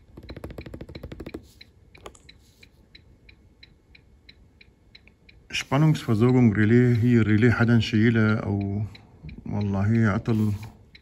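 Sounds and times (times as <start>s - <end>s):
turn signal indicator ticking: 2.9s - 10.3s.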